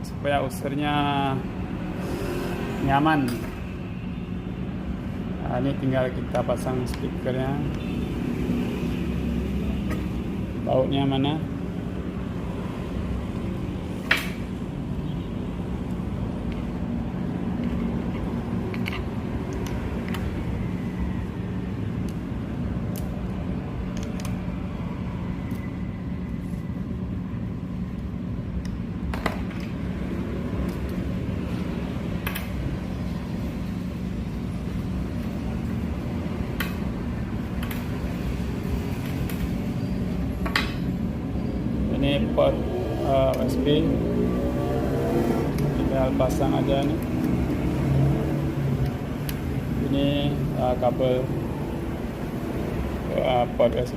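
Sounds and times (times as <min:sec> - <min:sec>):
clicks of screws and plastic parts: 0:18.7 - 0:20.2, 0:23.9 - 0:24.4.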